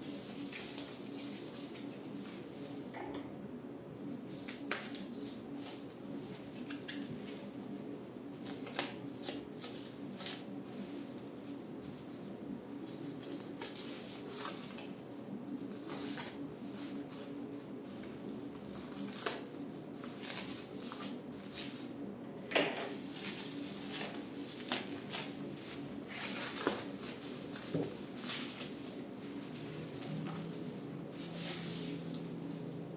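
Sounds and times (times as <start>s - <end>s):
steady low hum: 0.0s - 32.9s
hands clicking and rustling: 4.4s - 5.8s.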